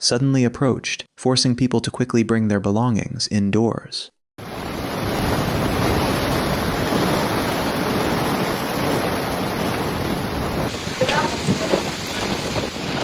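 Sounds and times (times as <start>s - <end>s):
heavy rain: 4.4s - 13.0s
wind: 4.4s - 13.0s.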